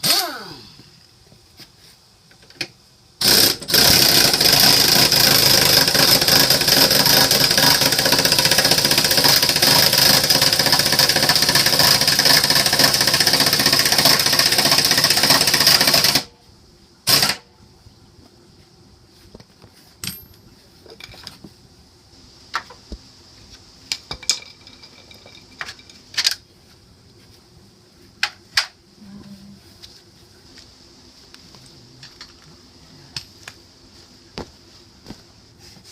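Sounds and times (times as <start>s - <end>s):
impact wrench hammering: 3.2s - 16.2s.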